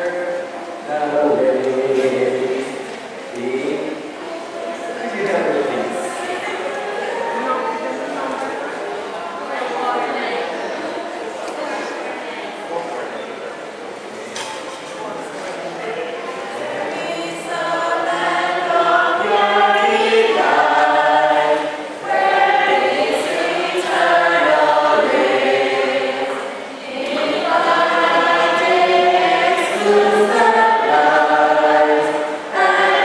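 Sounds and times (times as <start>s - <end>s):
choir singing: 0.0s - 2.8s, 16.6s - 33.0s.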